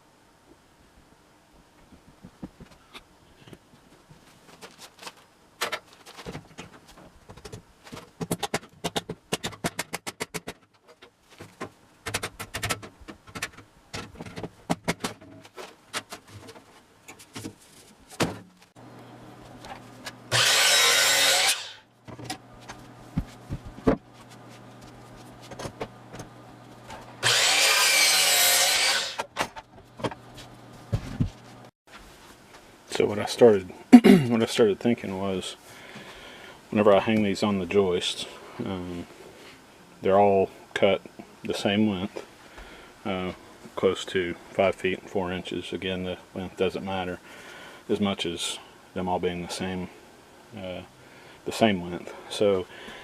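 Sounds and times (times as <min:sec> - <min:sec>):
power drill running: 0:20.3 - 0:21.8, 0:27.2 - 0:29.2.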